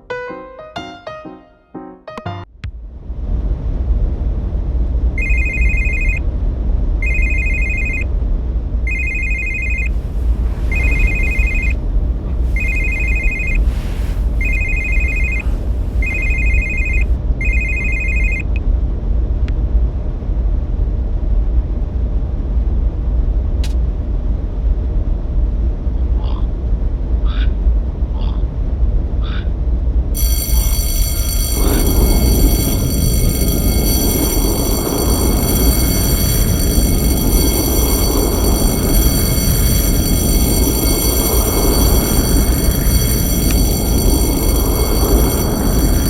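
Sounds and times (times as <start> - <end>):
low steady rumble: 2.6 - 25.8
telephone ringing: 5.2 - 6.2, 7.0 - 8.0, 8.9 - 11.8, 12.4 - 13.7, 14.4 - 18.5, 30.2 - 46.0.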